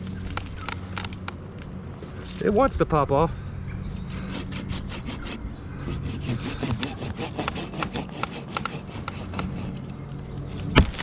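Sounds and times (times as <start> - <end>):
hand saw cutting wood: 4.1 - 10.0.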